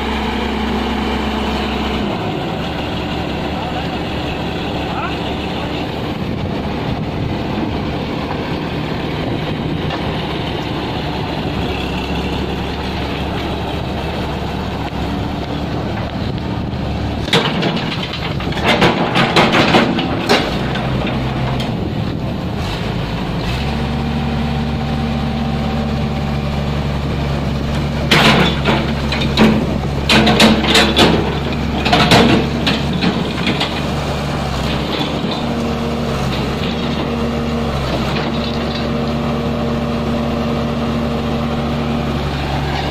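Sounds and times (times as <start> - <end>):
excavator diesel engine running: 0.0 - 42.9
loud clanking knocks: 17.2 - 21.8, 28.0 - 34.0.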